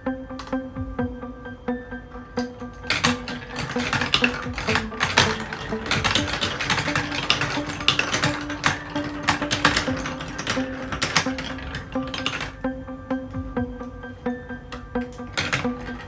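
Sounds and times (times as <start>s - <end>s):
background music: 0.0s - 16.0s
marbles clattering down plastic run: 2.9s - 12.6s, 15.4s - 16.0s.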